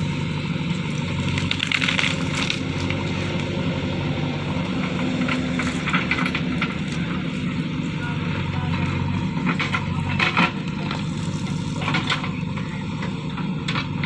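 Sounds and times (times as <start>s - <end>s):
diesel engine running: 0.0s - 14.0s
clanks and rattles: 4.6s - 14.0s.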